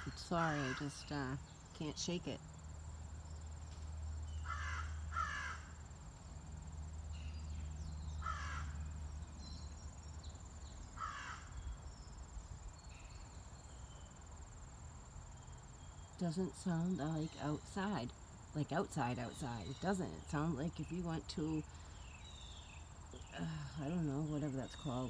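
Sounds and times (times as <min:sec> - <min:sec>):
high insect trill: 0:00.0 - 0:25.0
crow cawing: 0:04.4 - 0:05.8, 0:08.2 - 0:08.8, 0:11.0 - 0:11.6.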